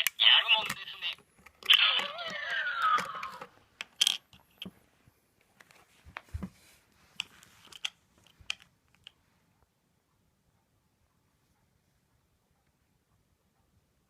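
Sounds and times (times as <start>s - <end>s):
small handling clicks and rustling: 0.0s - 4.8s, 5.4s - 9.2s.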